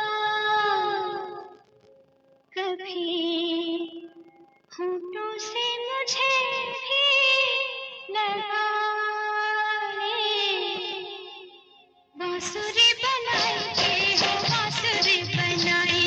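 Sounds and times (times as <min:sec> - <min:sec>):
woman singing slow melody: 0:02.6 - 0:04.1, 0:04.7 - 0:11.4.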